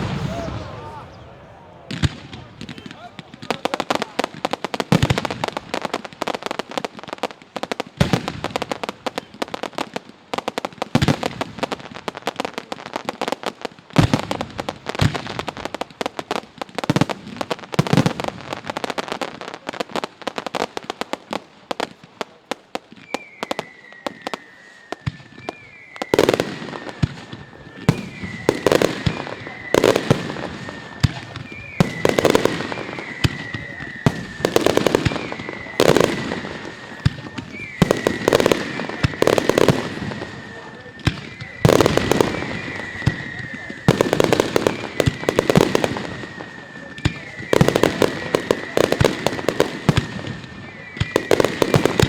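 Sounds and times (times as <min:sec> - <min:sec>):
deep booms of bursting shells: 0:00.0 - 0:02.9
high falling whistles: 0:00.0 - 0:03.0, 0:23.0 - 0:52.0
fireworks crackling and bangs: 0:00.0 - 0:52.0.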